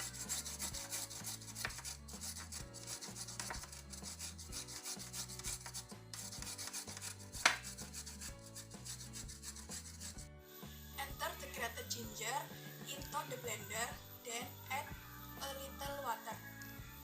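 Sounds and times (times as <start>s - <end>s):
ginger rasping on grater: 0.0s - 10.3s.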